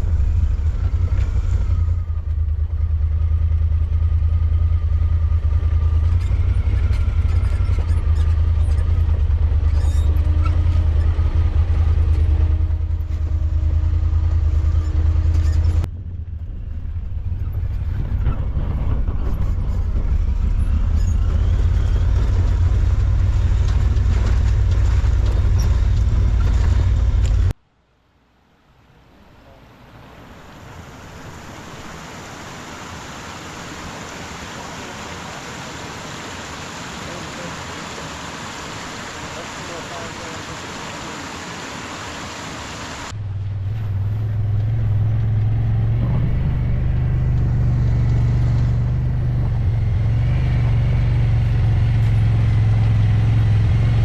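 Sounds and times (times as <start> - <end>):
vehicle engine droning: 0.0 - 27.6, 29.4 - 54.0
faint hiss: 27.7 - 43.1.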